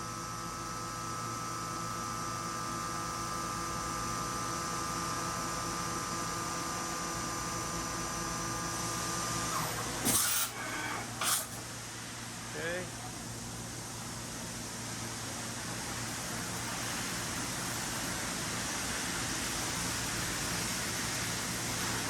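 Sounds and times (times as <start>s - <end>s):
machine spindle whine: 9.3s - 11.6s.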